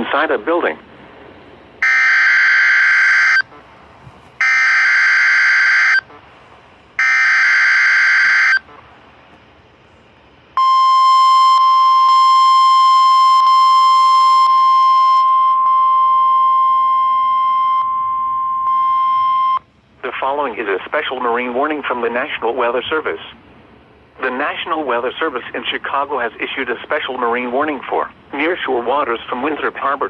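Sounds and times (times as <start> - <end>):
steady warning alarm tone: 1.8 - 8.9, 10.6 - 19.7.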